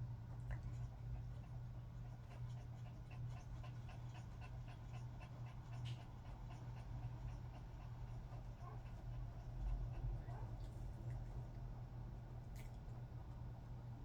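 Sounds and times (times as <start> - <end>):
dog panting: 0.3 - 11.6.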